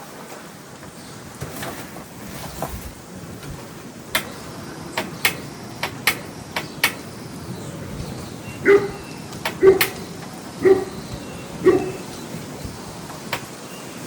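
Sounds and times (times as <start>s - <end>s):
steady background noise: 0.0s - 14.0s
sharp clicks and knocks: 3.4s - 7.2s, 9.3s - 10.4s, 13.1s - 13.6s
dog barking: 8.6s - 12.2s.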